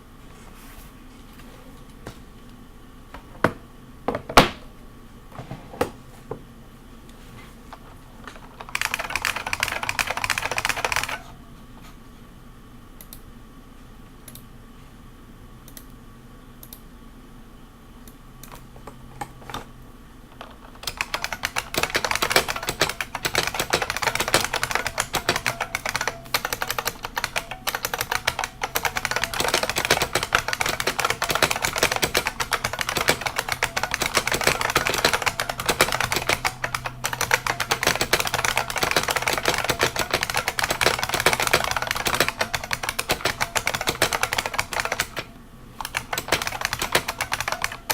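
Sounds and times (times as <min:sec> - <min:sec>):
buckling-spring keyboard typing: 0:08.2 - 0:11.3, 0:20.4 - 0:47.9.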